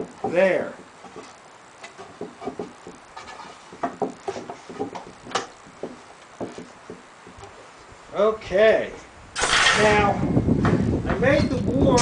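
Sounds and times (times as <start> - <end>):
wooden boards knocking and clattering: 0.0 - 7.5.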